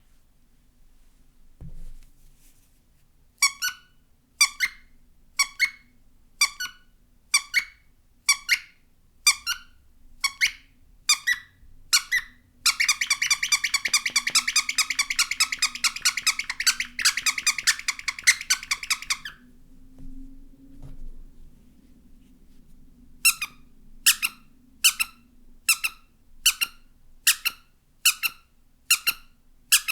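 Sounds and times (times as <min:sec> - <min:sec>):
squeaky toy squeaking: 0:03.4 - 0:05.8, 0:06.4 - 0:19.4, 0:23.3 - 0:29.9.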